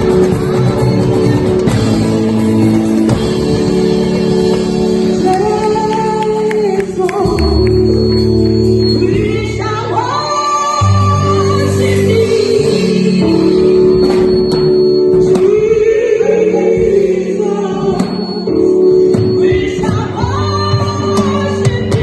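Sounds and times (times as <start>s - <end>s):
guitar and bass worship music: 0.0s - 22.0s
person singing: 4.0s - 14.4s, 15.0s - 22.0s.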